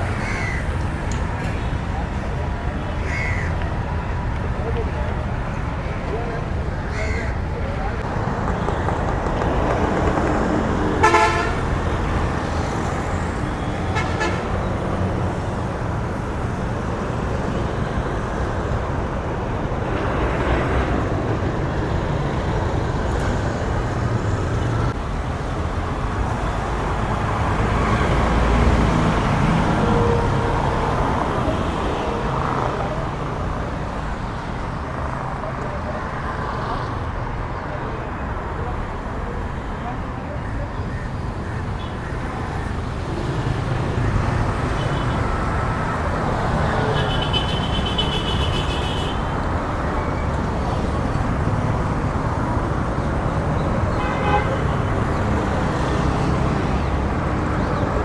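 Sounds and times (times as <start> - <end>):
busy street traffic: 0.0 - 58.0
vehicle horn tooting: 11.0 - 11.9, 13.6 - 14.8, 46.9 - 49.3, 53.9 - 54.8.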